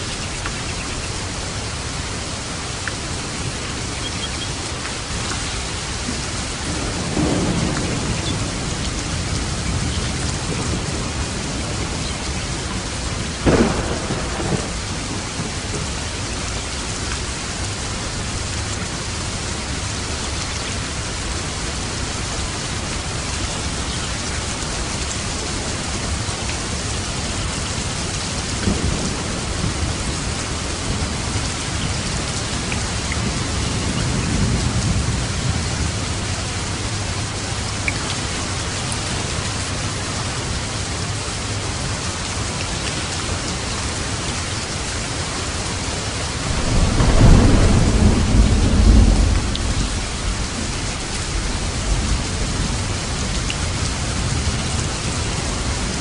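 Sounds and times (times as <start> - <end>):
rain drumming on a roof: 0.0 - 56.0
thunder rumbling: 5.7 - 16.9, 27.8 - 39.8, 46.1 - 56.0
loud thunder crack: 6.7 - 12.0, 13.4 - 15.5, 46.4 - 50.8.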